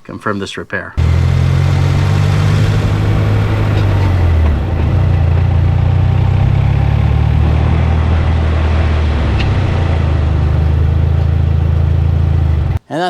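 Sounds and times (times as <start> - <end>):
road noise: 0.0 - 12.8
car engine rumble: 1.0 - 12.8.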